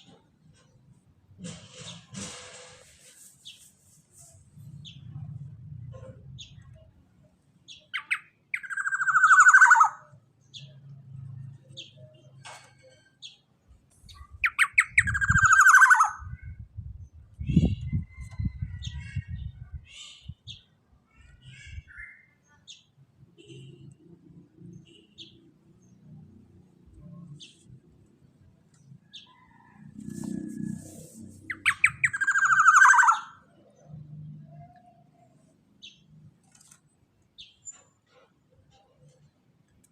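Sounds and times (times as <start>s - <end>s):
bird giving harsh calls: 8.0s - 10.1s, 31.4s - 33.4s.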